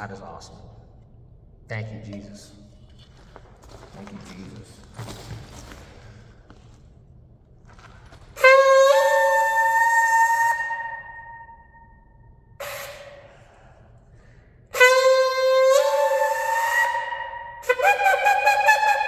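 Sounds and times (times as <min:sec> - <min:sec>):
shofar blasts: 0:08.4 - 0:13.3, 0:14.7 - 0:19.0.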